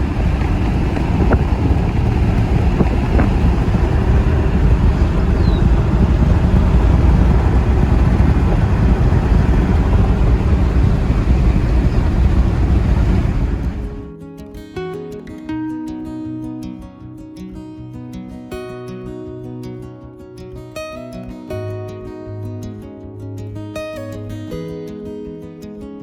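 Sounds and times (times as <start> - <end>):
vehicle road and engine noise: 0.0 - 14.1
wind on microphone: 0.0 - 14.1.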